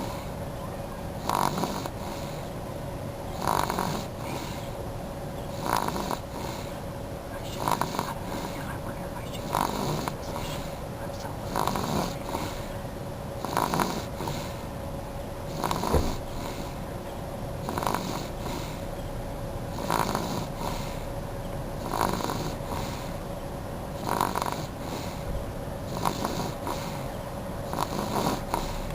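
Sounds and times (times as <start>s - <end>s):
baby snoring: 0.0s - 0.4s, 1.2s - 2.6s, 3.3s - 4.8s, 5.5s - 6.8s, 7.4s - 12.8s, 13.4s - 14.7s, 15.5s - 16.8s, 17.6s - 18.9s, 19.7s - 21.1s, 21.8s - 23.2s, 24.0s - 25.2s, 25.8s - 28.9s.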